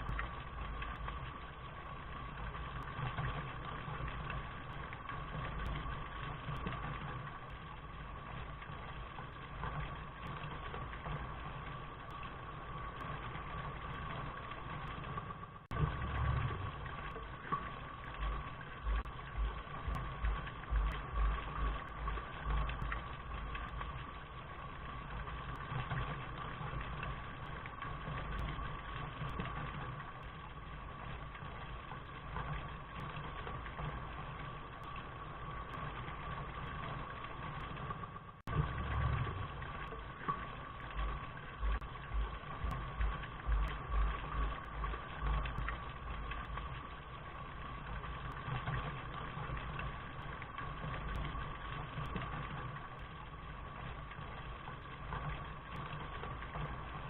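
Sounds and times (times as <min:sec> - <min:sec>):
steady rain: 0:00.0 - 0:57.0
low pulsing: 0:08.0 - 0:26.0, 0:38.5 - 0:48.8.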